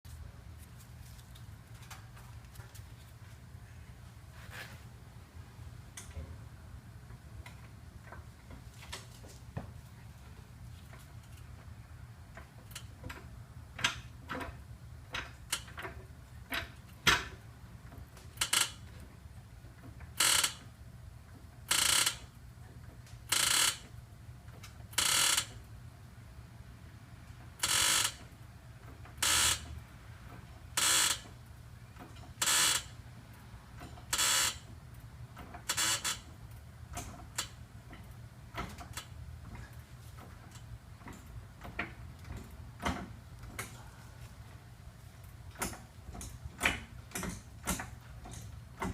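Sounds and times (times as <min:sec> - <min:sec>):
ball joint creaking: 0:12.3 - 0:25.6, 0:27.5 - 0:33.0, 0:33.7 - 0:43.9, 0:45.2 - 0:48.9.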